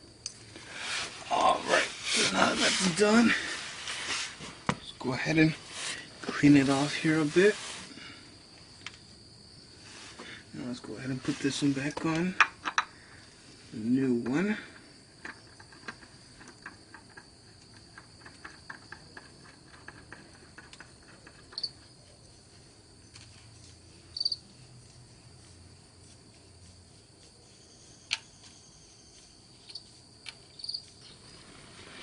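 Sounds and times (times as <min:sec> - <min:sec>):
crickets chirring: 0:00.0 - 0:32.0
light clicks and taps of hand work: 0:15.2 - 0:21.7, 0:28.1 - 0:28.3.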